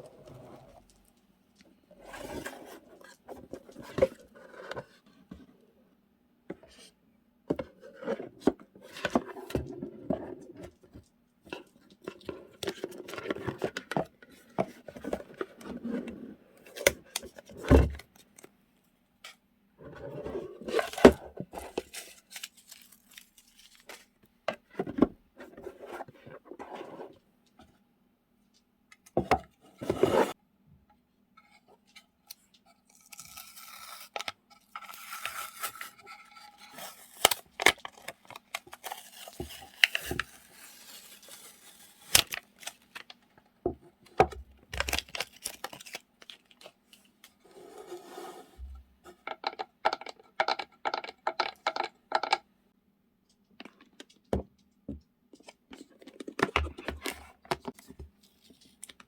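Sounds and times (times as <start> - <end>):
paper and plastic rustling: 20.6 - 24.2, 34.6 - 43.2, 44.8 - 48.0.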